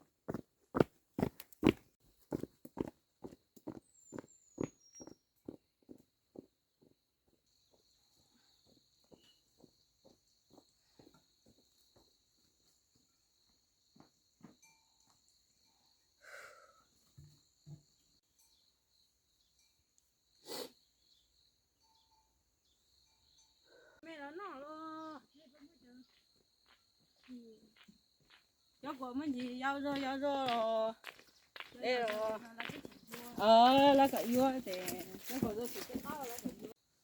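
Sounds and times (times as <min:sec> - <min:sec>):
soft footsteps: 0:29.4 - 0:36.8.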